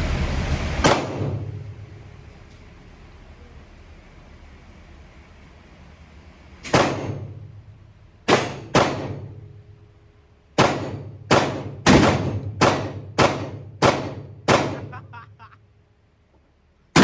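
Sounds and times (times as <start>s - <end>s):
gunshots with echo: 0.8s - 1.5s, 6.7s - 7.3s, 8.3s - 9.3s, 10.6s - 15.1s.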